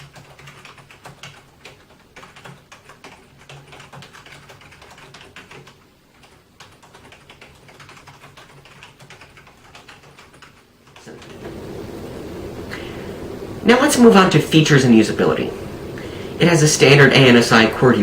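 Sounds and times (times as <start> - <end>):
typing on computer keyboard: 0.0 - 11.4.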